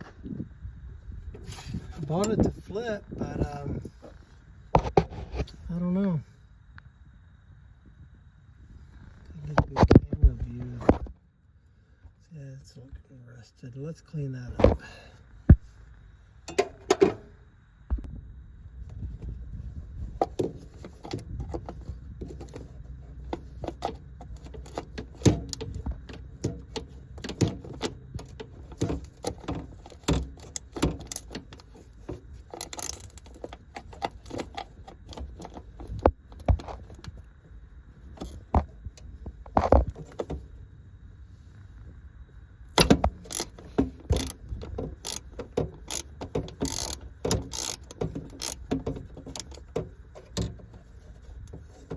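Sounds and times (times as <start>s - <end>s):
steady low rumble: 0.0s - 51.9s.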